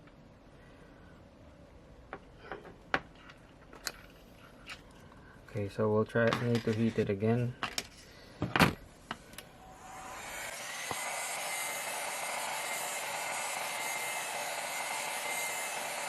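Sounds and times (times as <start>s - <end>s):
heat gun running: 9.4s - 16.0s.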